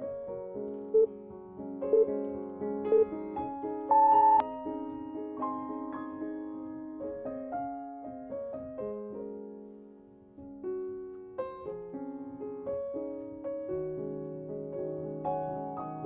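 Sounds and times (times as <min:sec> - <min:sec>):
soft piano music: 0:00.0 - 0:16.0.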